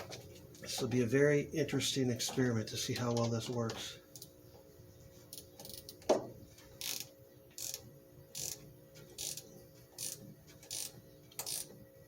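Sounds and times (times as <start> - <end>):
ratchet wrench clicking: 5.3 - 6.0, 6.8 - 11.7.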